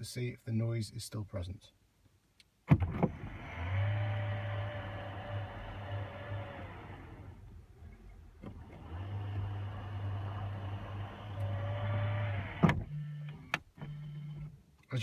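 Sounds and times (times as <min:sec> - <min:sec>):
electric tailgate motor humming: 0:03.1 - 0:14.4.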